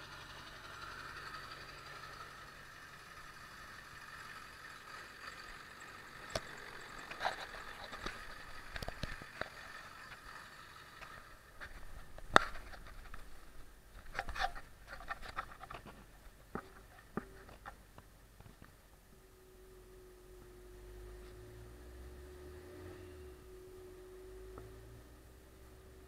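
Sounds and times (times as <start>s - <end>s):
diesel engine running: 0.0s - 26.0s
knocks and scrapes: 6.4s - 18.8s.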